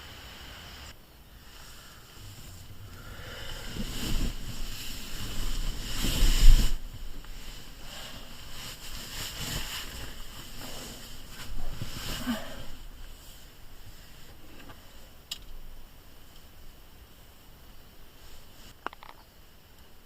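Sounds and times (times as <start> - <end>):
wind buffeting microphone: 2.1 - 8.5.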